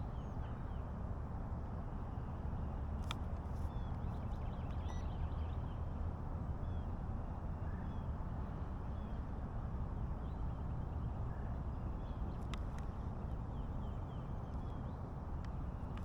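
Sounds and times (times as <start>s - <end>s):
faint bird chirps: 3.6s - 5.8s.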